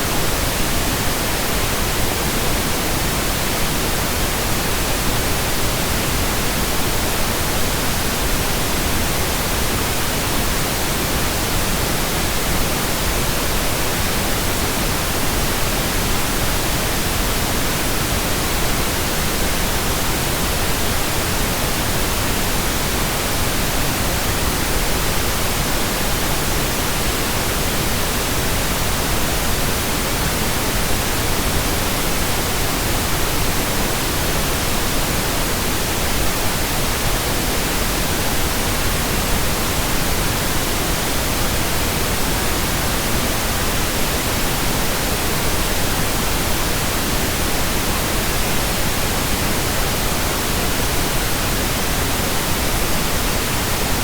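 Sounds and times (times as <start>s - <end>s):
pink noise hiss: 0.0s - 54.0s.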